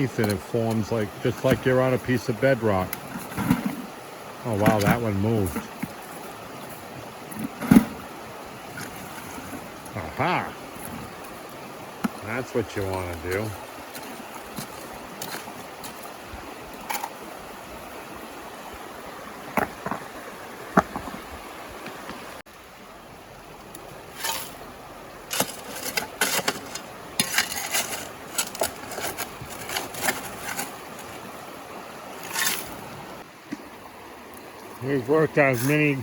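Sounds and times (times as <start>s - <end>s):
shovel scraping in wet gravel: 0.0s - 8.1s, 12.1s - 16.2s, 24.1s - 31.3s, 32.1s - 32.9s
river water rushing: 0.0s - 36.0s.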